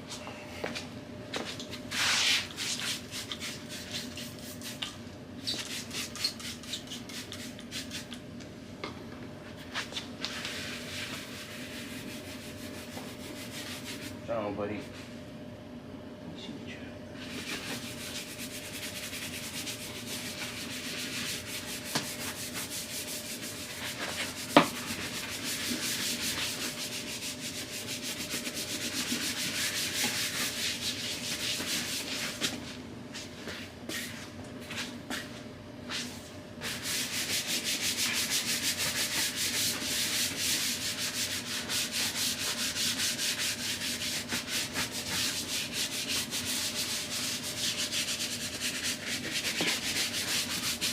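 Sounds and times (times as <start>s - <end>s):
brush scrubbing leather: 17.3s - 32.5s, 36.6s - 50.9s.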